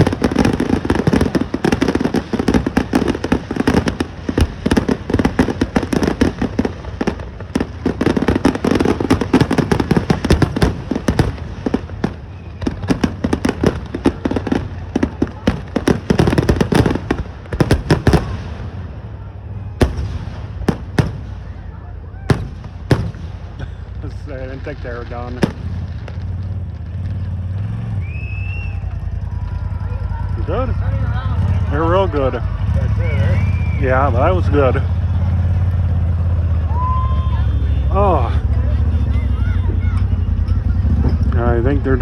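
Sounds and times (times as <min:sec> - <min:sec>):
firework bursts: 0:00.0 - 0:27.4.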